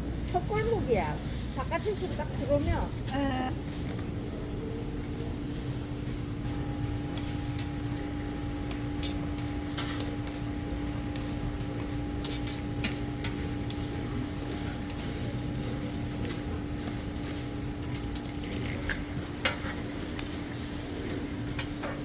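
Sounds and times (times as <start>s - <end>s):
machine hum: 5.9s - 22.0s
metal cooking utensils tapping: 7.1s - 15.3s.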